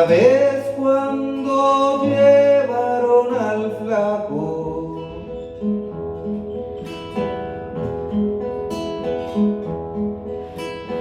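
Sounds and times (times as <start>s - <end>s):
acoustic guitar plucking: 0.0s - 11.0s.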